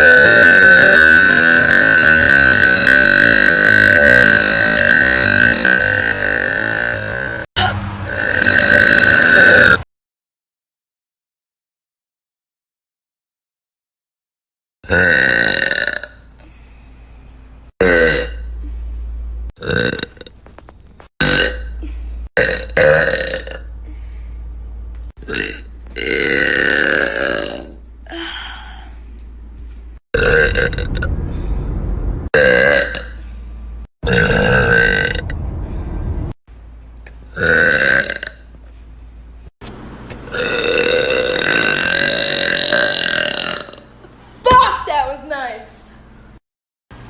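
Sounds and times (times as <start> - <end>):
woman burping loudly: 0.0 - 9.8, 14.8 - 16.3, 17.8 - 18.5, 21.2 - 23.7, 25.2 - 28.3, 30.2 - 31.1, 32.4 - 33.2, 34.0 - 35.3, 37.4 - 38.4, 40.3 - 43.9.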